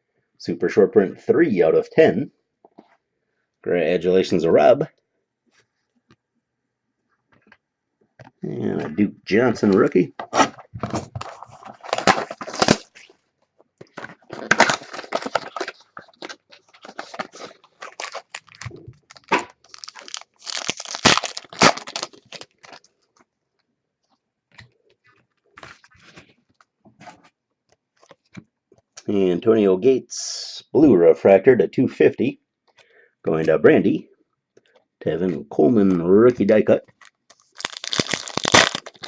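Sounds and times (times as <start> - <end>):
card packaging crinkling and rustling: 9.6 - 23.3, 36.3 - 39.0.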